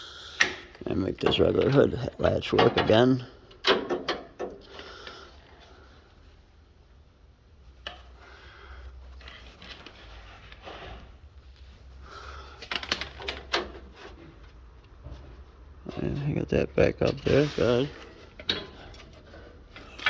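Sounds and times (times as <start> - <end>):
hood latch clicking: 3.5 - 4.6.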